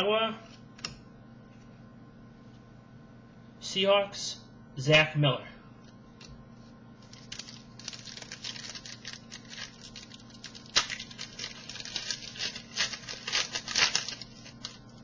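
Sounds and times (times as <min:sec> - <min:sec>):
foil wrapper crinkling and tearing: 0:07.0 - 0:15.0.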